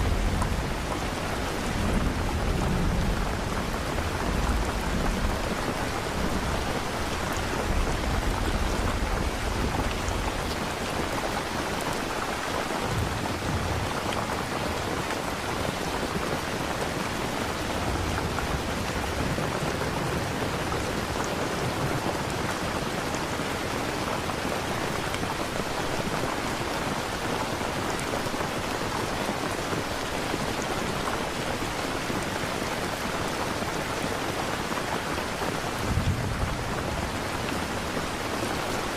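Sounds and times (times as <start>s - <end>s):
distant thunder rumbling: 0.0s - 11.1s, 12.8s - 16.3s, 35.8s - 38.2s
steady rain: 0.0s - 38.9s.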